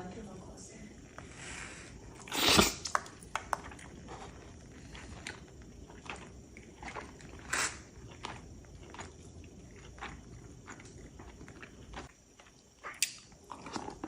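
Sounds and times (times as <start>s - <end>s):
person biting food: 2.2s - 3.0s, 6.9s - 8.2s
chewing clicks: 2.2s - 14.0s.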